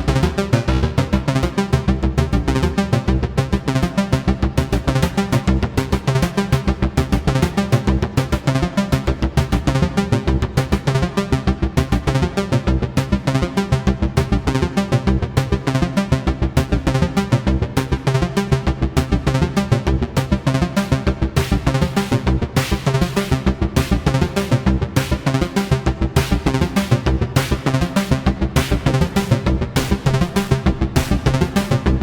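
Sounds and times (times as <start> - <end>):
pulsing synthesizer sequence: 0.0 - 32.0
synth bassline: 16.5 - 32.0.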